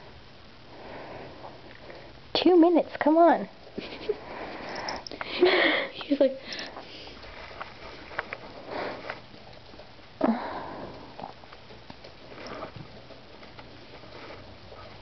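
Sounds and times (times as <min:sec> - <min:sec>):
kitten sniffing: 0:06.7 - 0:09.8.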